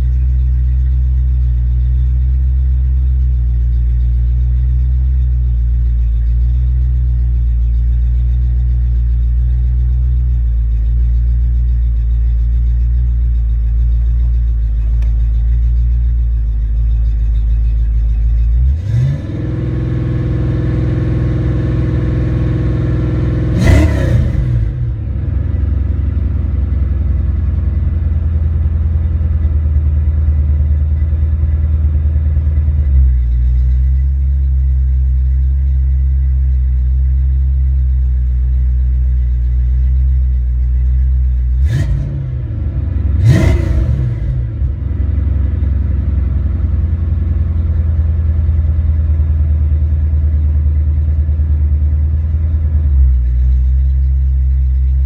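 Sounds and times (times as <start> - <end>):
car engine idling: 0.0 - 55.0
engine revving: 18.6 - 26.9, 41.6 - 48.4.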